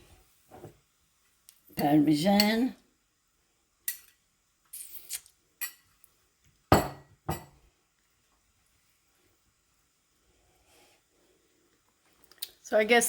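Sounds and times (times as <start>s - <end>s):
dishes and utensils clinking: 6.7s - 7.6s.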